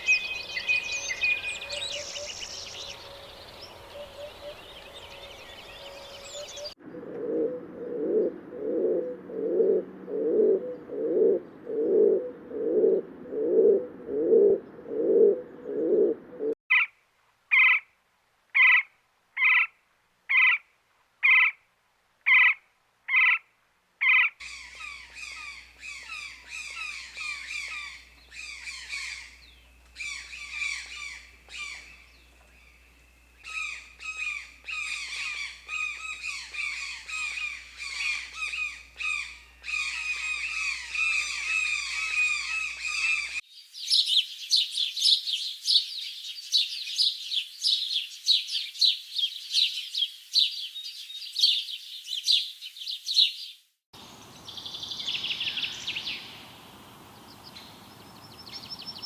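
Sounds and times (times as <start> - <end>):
high bird chirping: 0.0 - 6.8, 54.2 - 59.0
low animal call: 0.0 - 16.6.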